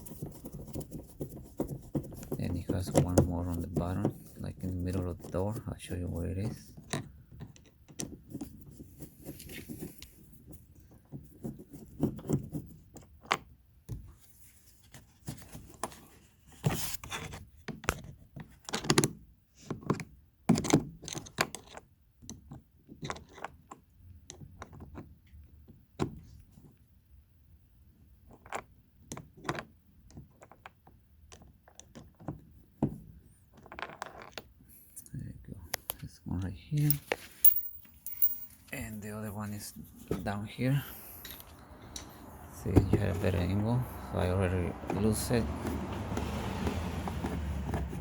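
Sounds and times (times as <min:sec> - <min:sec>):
hand tools clicking and tapping: 0:36.8 - 0:38.5.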